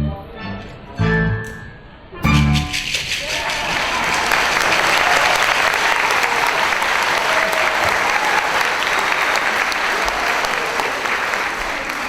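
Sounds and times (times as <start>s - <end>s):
audience applauding: 2.6s - 12.0s.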